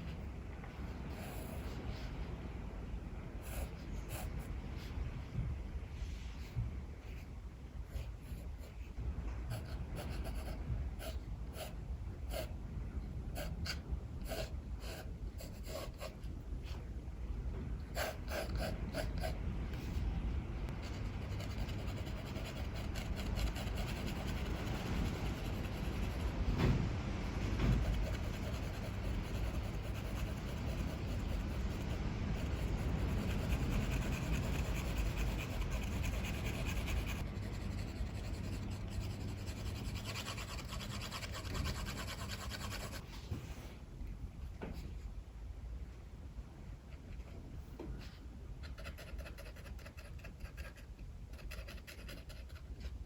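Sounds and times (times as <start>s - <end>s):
strong wind rumble: 0.0s - 43.5s
pencil strokes on paper: 20.8s - 26.6s, 27.2s - 43.0s.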